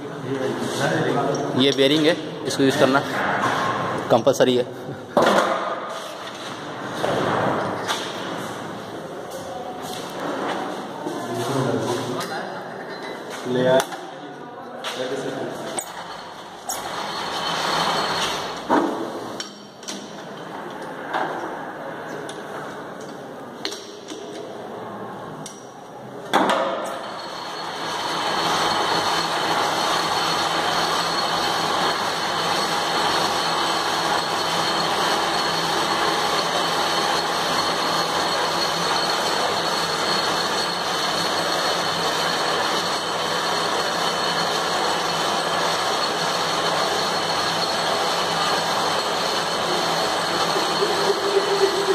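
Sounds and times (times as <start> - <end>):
metal lathe running with whine: 16.6 - 18.7, 27.0 - 51.9.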